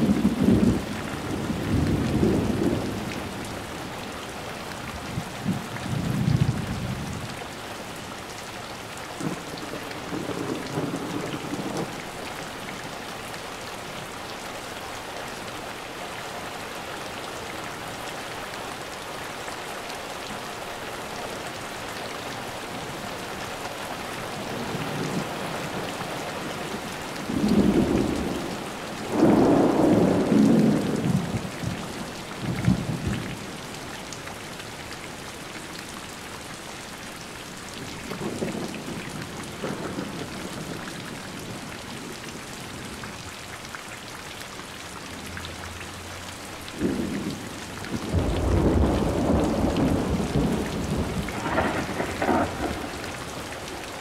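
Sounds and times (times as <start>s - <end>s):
steady rain falling: 0.0s - 54.0s
thunder rumbling: 26.8s - 31.8s, 46.8s - 54.0s.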